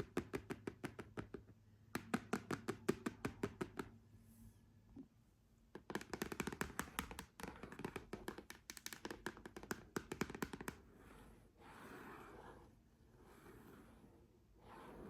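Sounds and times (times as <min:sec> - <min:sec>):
fingernails tapping: 0:05.7 - 0:10.8.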